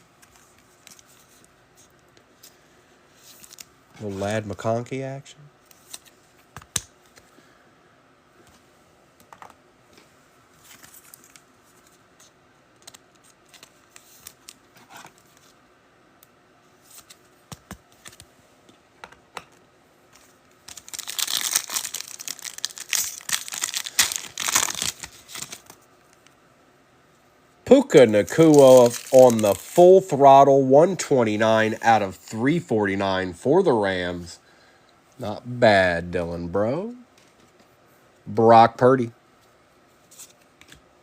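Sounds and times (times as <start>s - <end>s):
cards and packaging rustling: 0.2s - 4.7s, 10.6s - 15.6s, 16.8s - 18.3s, 19.4s - 26.3s, 27.7s - 32.1s
wrapper tearing and crinkling: 20.6s - 25.8s, 28.2s - 29.8s.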